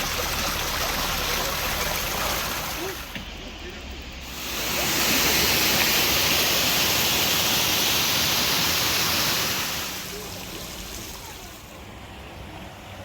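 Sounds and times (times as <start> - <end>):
rushing falling water: 0.0 - 13.0.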